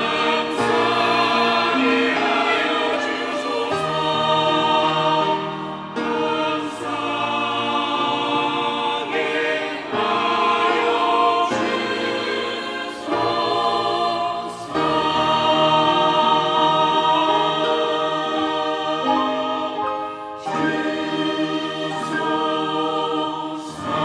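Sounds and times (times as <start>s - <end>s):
choir singing a hymn: 0.0s - 24.0s.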